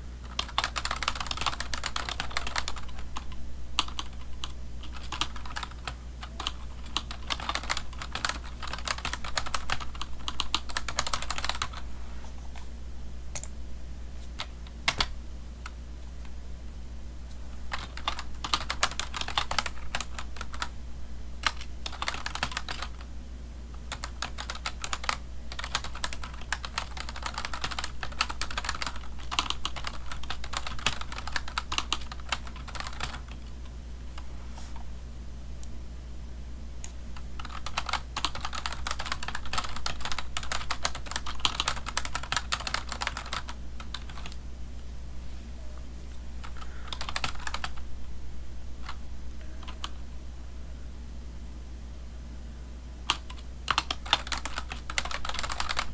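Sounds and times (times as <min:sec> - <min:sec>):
computer keyboard typing: 0:00.2 - 0:11.8, 0:13.3 - 0:13.5, 0:14.4 - 0:15.8, 0:17.7 - 0:20.7, 0:21.4 - 0:23.1, 0:23.8 - 0:33.7, 0:37.4 - 0:44.4, 0:46.4 - 0:47.8, 0:48.8 - 0:49.0, 0:49.6 - 0:50.0, 0:53.0 - 0:55.9.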